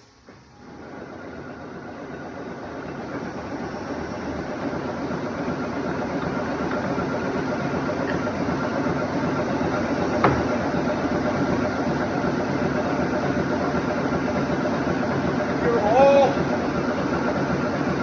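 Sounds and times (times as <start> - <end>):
lathe machinery hum: 0.0 - 18.0
sharp knock: 10.2 - 10.6.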